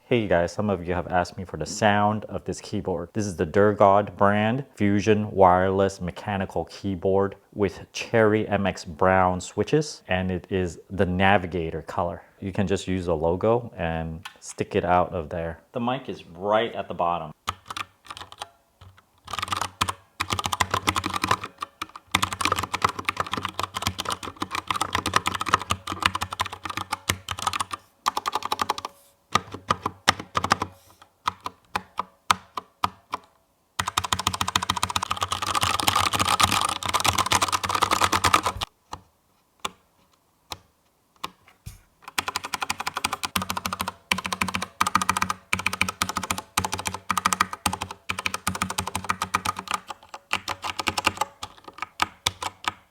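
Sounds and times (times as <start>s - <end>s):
mechanical keyboard typing: 17.5s - 38.7s, 42.1s - 52.9s.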